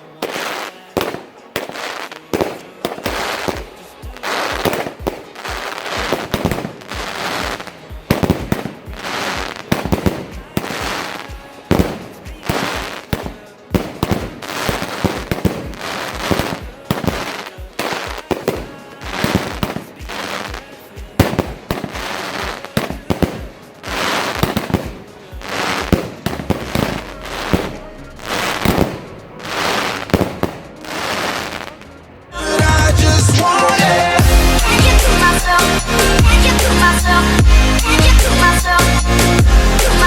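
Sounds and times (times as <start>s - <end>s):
fireworks launch shots: 0.0s - 35.6s
fireworks bursts crackling: 0.0s - 40.0s.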